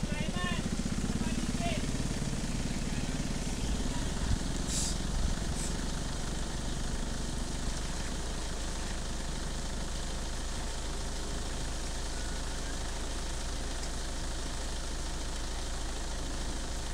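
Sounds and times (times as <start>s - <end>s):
engine idling: 0.0s - 16.9s
short hissing bursts: 4.6s - 5.8s.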